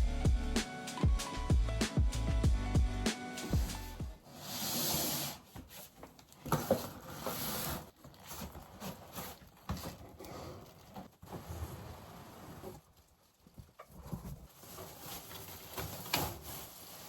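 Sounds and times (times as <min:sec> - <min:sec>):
background music: 0:00.0 - 0:04.2
rustling and rubbing: 0:03.4 - 0:17.0.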